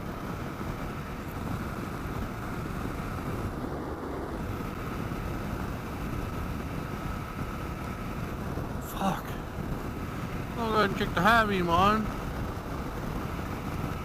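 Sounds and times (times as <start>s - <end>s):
motorcycle engine running: 0.0s - 14.0s
wind rushing on helmet microphone: 0.0s - 14.0s
heavy rain: 8.5s - 12.0s.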